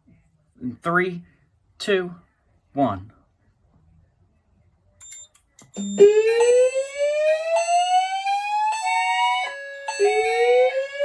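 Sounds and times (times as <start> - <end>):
rising evacuation alarm tone: 5.8 - 11.0.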